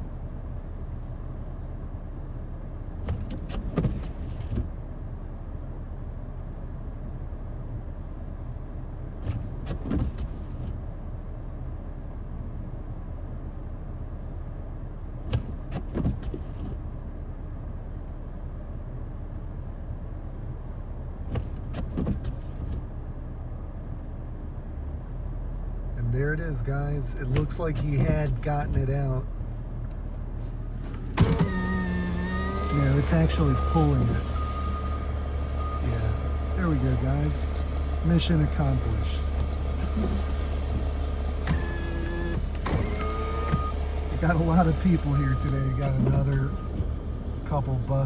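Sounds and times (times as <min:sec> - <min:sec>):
vehicle engine idling: 0:00.0 - 0:48.0
clicks and squeaks: 0:29.8 - 0:36.6.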